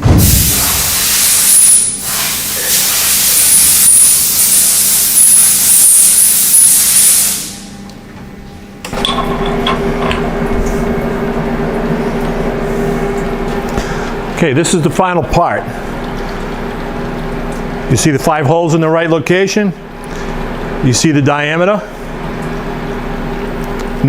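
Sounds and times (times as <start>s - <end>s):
low machine hum: 0.0s - 2.7s, 7.4s - 24.0s
spraying hiss in milling machine: 0.0s - 7.8s.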